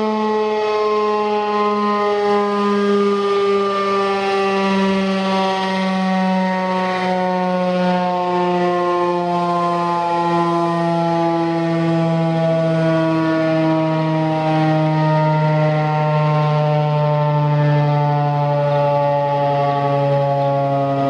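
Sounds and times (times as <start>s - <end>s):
warning siren sliding downward: 0.0s - 21.0s.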